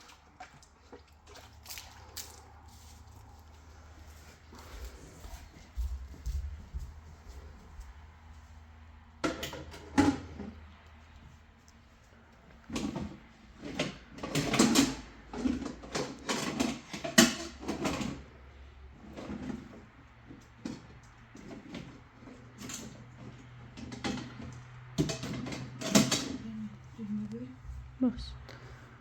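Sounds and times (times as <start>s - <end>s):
objects knocking and clattering: 9.2s - 10.7s, 12.7s - 18.3s, 20.6s - 26.5s.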